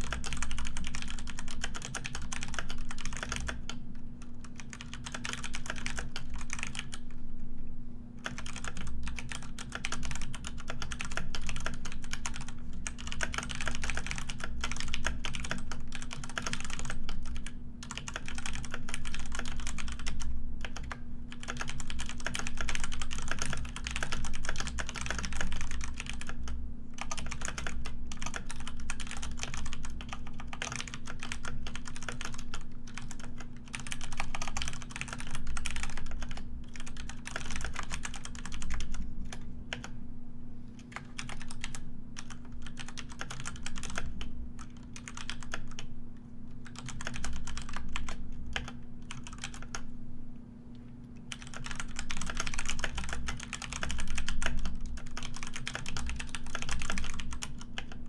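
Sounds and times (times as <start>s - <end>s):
fast typing on keyboard: 0.0s - 3.8s, 4.4s - 7.0s, 8.2s - 39.9s, 40.8s - 45.9s, 46.6s - 49.9s, 51.2s - 58.0s
faint low hum: 0.0s - 58.0s.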